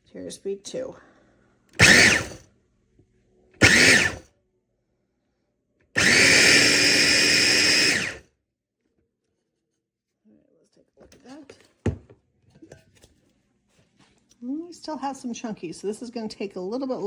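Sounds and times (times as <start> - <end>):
food processor chopping: 1.8 - 2.4, 3.6 - 4.2, 6.0 - 8.2.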